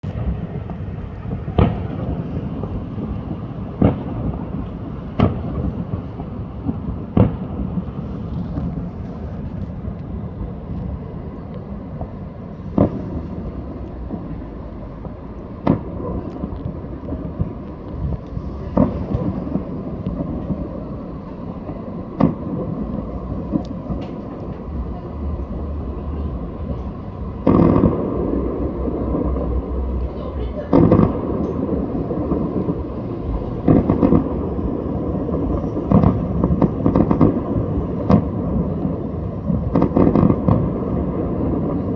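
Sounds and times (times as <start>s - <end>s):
steady low rumble: 0.0s - 41.9s
fireworks shells bursting: 15.0s - 38.4s.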